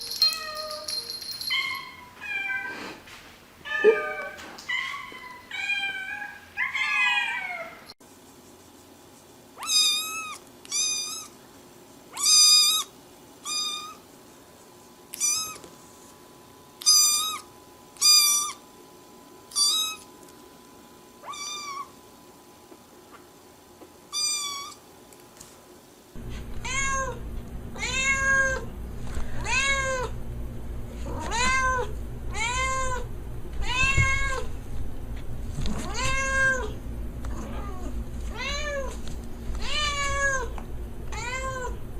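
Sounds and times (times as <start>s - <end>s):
cats meowing: 1.6s - 2.8s, 3.7s - 8.0s, 21.2s - 21.9s, 26.3s - 27.2s, 27.8s - 28.6s, 29.4s - 30.1s, 31.1s - 34.5s, 35.8s - 39.0s, 39.6s - 41.8s.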